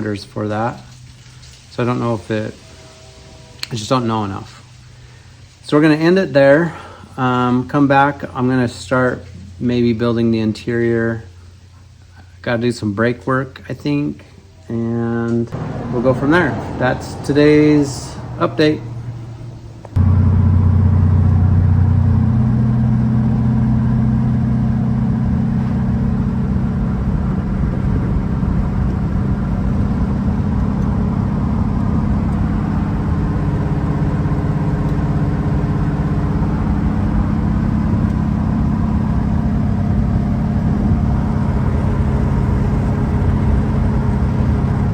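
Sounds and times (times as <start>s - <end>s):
car engine running: 15.6s - 44.9s.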